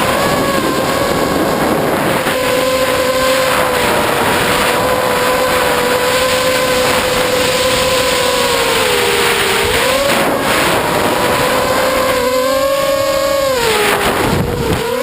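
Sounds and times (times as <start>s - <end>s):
quadcopter motors whining: 0.0s - 15.0s
wind rushing over microphone: 0.0s - 15.0s.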